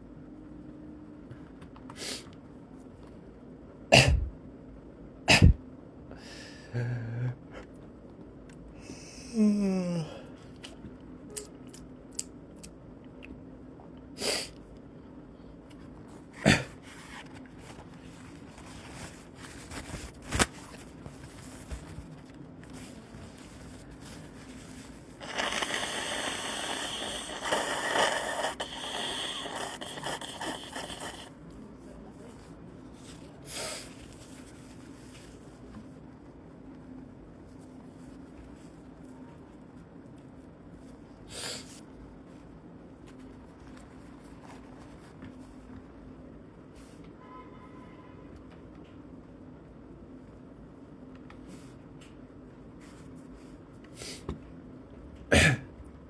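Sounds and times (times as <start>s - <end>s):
person coughing: 3.9s - 4.3s, 5.3s - 5.6s, 16.4s - 16.8s, 55.3s - 55.7s
person sneezing: 3.9s - 4.3s, 5.3s - 5.6s, 16.4s - 16.8s, 55.3s - 55.7s.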